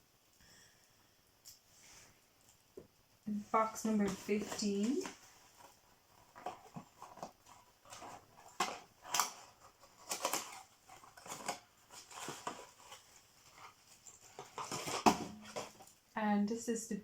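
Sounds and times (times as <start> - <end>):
cardboard box packaging rustling: 3.4 - 16.1.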